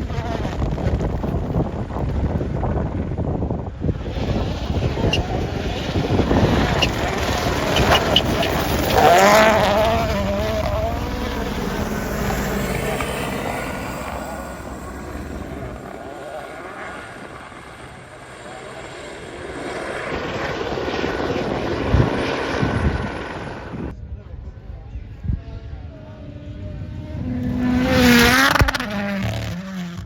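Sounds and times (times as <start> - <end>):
rally car engine revving: 3.8 - 16.7, 25.9 - 30.0.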